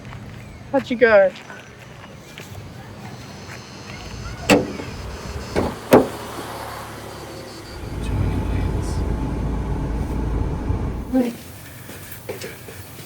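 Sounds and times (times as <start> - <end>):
road vehicle rumbling: 2.0 - 13.0
sharp knocks: 5.6 - 6.2.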